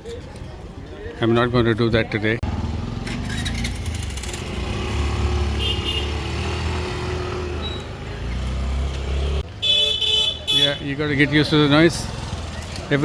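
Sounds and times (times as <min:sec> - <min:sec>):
street din: 0:00.0 - 0:13.0
motorcycle engines running: 0:02.4 - 0:09.4, 0:11.3 - 0:13.0.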